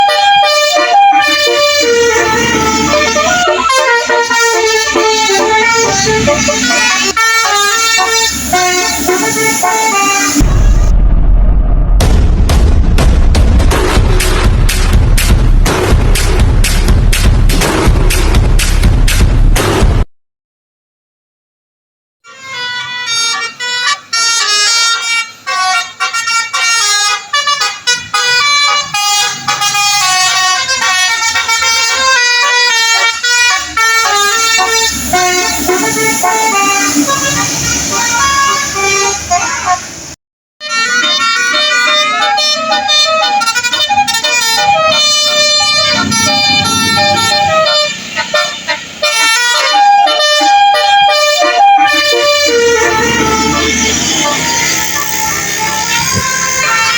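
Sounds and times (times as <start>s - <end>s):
multi-tone air horn melody: 0.0s - 10.9s, 22.2s - 56.9s
low rumble: 8.3s - 20.0s, 44.8s - 47.9s.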